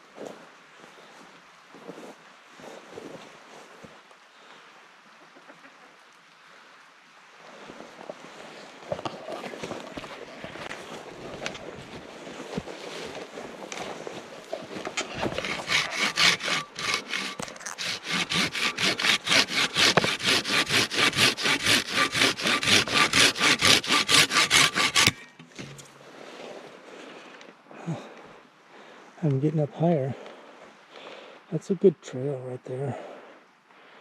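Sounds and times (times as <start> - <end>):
hand saw cutting wood: 14.5 - 25.9.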